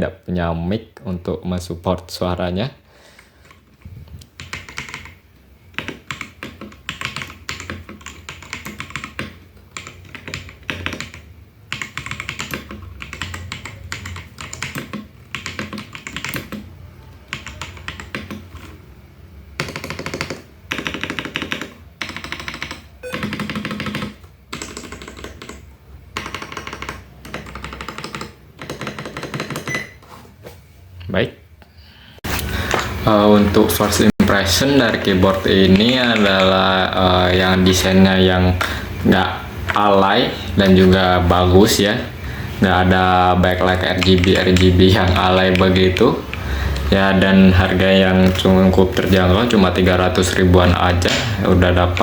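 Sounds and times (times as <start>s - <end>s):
mechanical keyboard typing: 4.2s - 18.8s, 19.6s - 29.8s, 34.9s - 38.2s, 42.7s - 52.0s.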